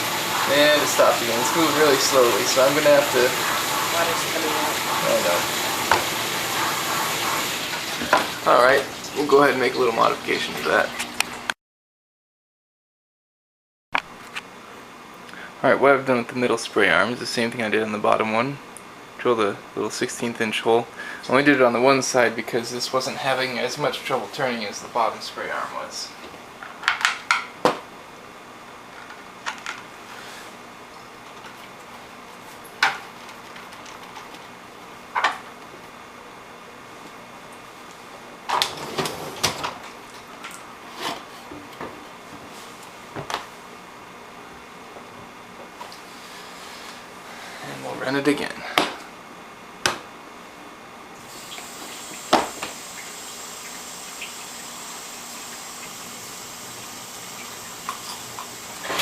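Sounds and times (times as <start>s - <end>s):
dishwasher water hissing: 0.0s - 11.2s, 38.5s - 41.1s, 51.2s - 59.0s.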